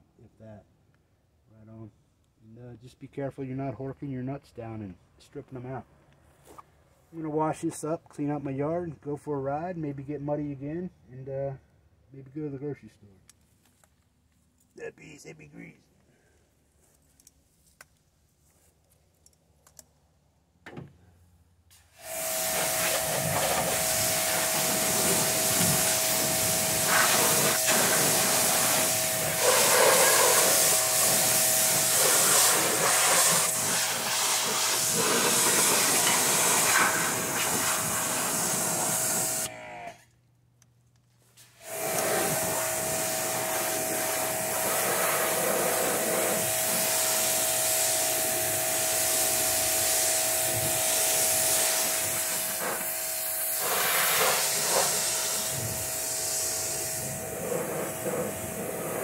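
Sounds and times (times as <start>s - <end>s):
pressure washer spraying: 22.0s - 39.5s, 41.6s - 59.0s.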